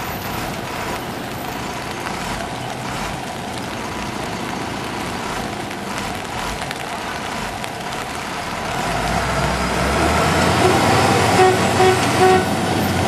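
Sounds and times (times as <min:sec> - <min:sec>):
engine rumble: 0:00.0 - 0:13.0
horn toots: 0:10.2 - 0:12.6.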